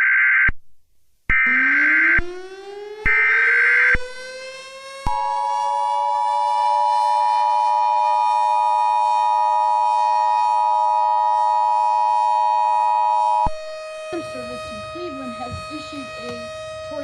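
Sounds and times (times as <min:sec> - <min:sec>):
two-tone alert signal: 0:01.4 - 0:02.1, 0:14.1 - 0:17.0
civil defense siren winding up: 0:01.4 - 0:17.0.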